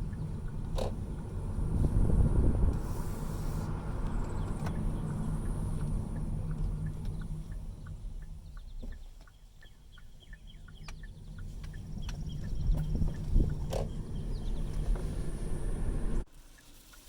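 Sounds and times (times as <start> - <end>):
car road rumble: 0.0 - 16.3
light ticks: 4.0 - 15.2.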